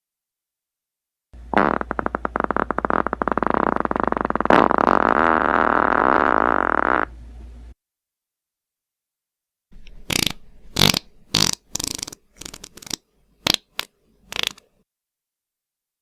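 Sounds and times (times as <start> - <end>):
farts: 1.5 - 7.1, 10.0 - 14.6.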